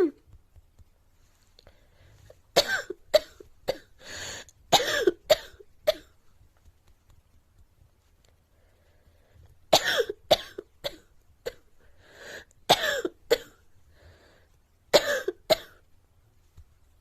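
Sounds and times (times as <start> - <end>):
girl coughing: 2.6 - 4.0, 4.7 - 6.1, 9.7 - 11.6, 12.7 - 13.6, 15.0 - 15.8.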